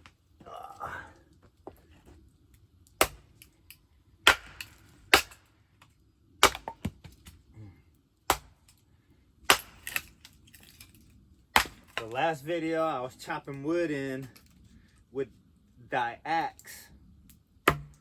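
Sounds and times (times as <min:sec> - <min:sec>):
axe chopping wood: 0:03.0 - 0:03.2, 0:04.2 - 0:05.4, 0:06.4 - 0:07.4, 0:08.3 - 0:08.6, 0:09.5 - 0:10.2, 0:11.6 - 0:12.1, 0:17.6 - 0:18.0.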